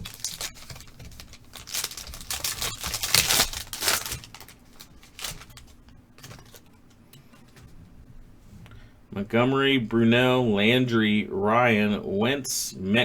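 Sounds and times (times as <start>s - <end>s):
wrapper tearing and crinkling: 0.0s - 6.6s.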